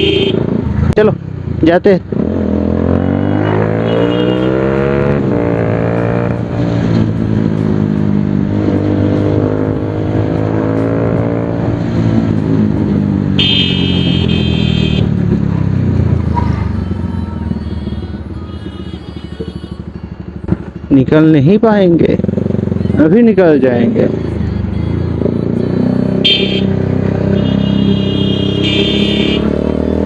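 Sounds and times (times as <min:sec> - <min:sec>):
vehicle horn: 0:00.0 - 0:00.5, 0:03.0 - 0:04.9, 0:13.4 - 0:15.1, 0:17.7 - 0:19.8, 0:26.2 - 0:29.6
motorcycle engine accelerating: 0:00.0 - 0:20.9, 0:21.8 - 0:30.0.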